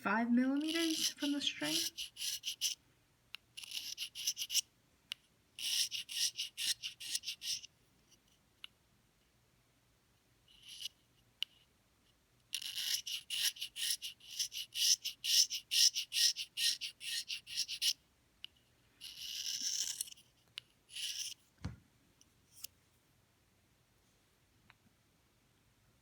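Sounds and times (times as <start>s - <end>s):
knife scraping cane: 0.7s - 2.8s, 3.6s - 4.6s, 5.6s - 7.7s, 12.5s - 18.0s, 19.0s - 20.2s, 20.9s - 21.4s
low thump: 21.6s - 21.8s.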